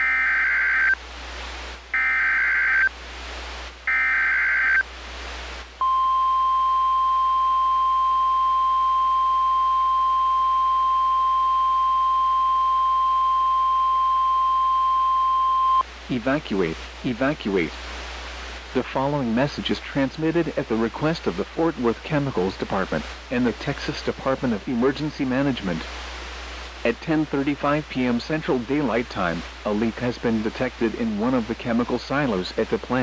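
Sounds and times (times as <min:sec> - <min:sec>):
screeching digital data bursts: 0:00.0 - 0:01.0, 0:02.0 - 0:02.9, 0:03.9 - 0:04.8
steady attention tone: 0:05.8 - 0:15.8.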